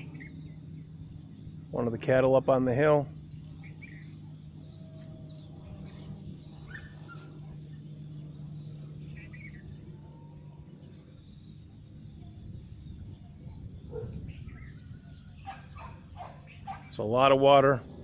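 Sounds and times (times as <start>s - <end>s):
steady low hum: 0.0s - 18.0s
short bird calls: 3.1s - 11.6s.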